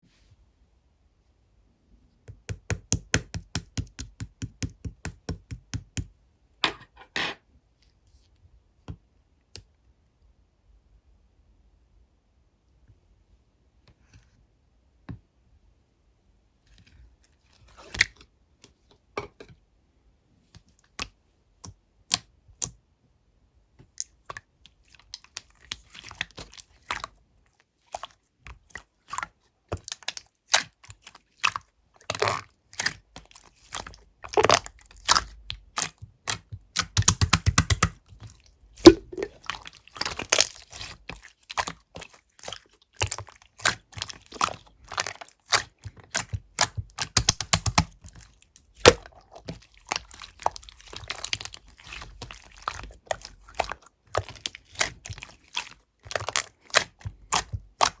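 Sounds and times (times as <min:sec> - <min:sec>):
slime sticky clicks and pops: 0:35.8 - 0:38.0, 0:38.8 - 0:39.4, 0:46.2 - 0:47.9.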